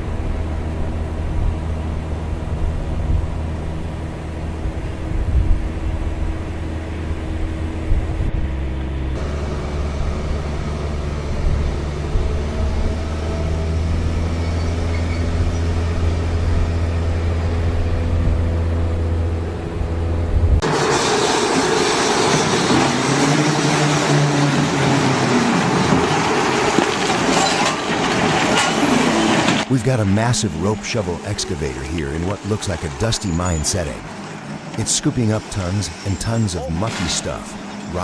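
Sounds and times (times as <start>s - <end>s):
heavy diesel engine droning: 0.0s - 38.0s.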